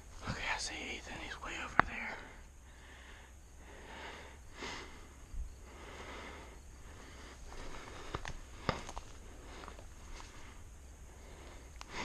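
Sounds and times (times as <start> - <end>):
light clicks: 11.7 - 11.9.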